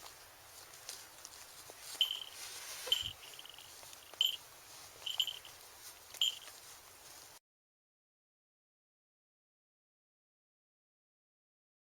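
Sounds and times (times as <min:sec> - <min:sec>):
falcon chirping calls: 0:02.0 - 0:04.4.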